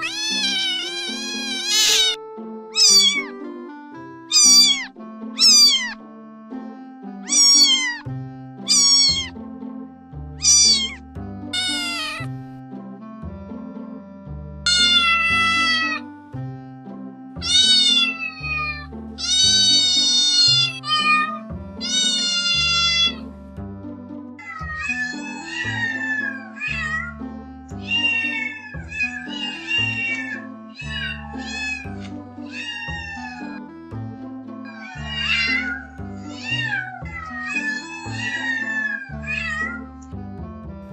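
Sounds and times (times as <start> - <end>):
kitten meowing: 0.0 - 3.4, 4.3 - 6.0, 7.2 - 8.1, 8.7 - 9.3, 10.4 - 11.0, 11.6 - 12.3, 14.7 - 16.1, 17.4 - 23.2, 24.4 - 27.2, 27.8 - 33.6, 34.6 - 39.8
background music with low beat: 0.8 - 26.2, 33.2 - 34.6, 38.8 - 40.9.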